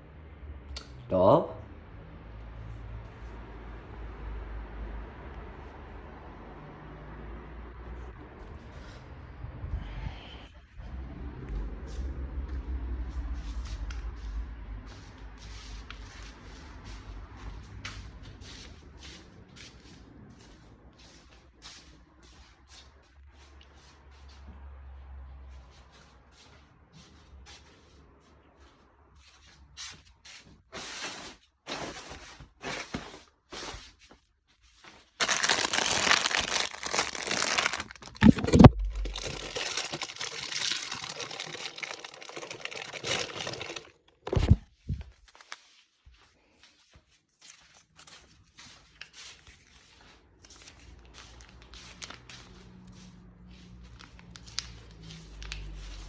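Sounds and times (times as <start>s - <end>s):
paper or plastic crinkling: 34.9s - 45.9s, 47.6s - 53.0s, 53.6s - 56.0s.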